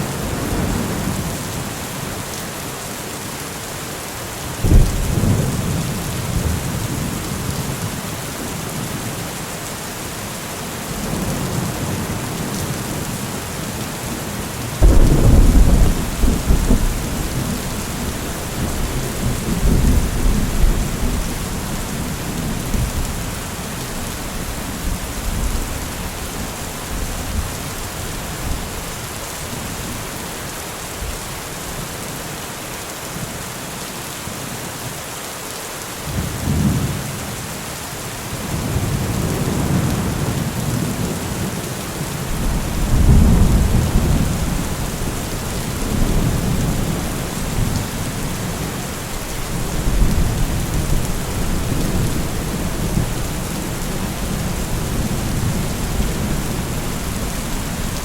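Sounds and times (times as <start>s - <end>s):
heavy rain: 0.0s - 58.0s
thunder rumbling: 4.6s - 7.3s, 14.8s - 27.6s, 42.3s - 58.0s.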